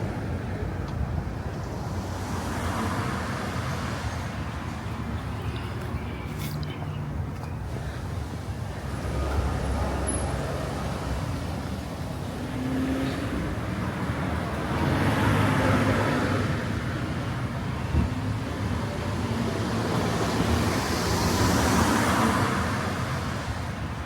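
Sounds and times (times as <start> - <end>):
street traffic passing: 0.0 - 24.0
vehicle passing loudly: 8.8 - 17.5.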